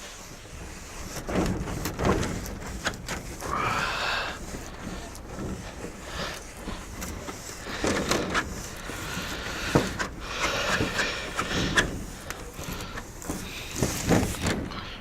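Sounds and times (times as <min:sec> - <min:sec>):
brush scrubbing glass: 0:00.0 - 0:15.0.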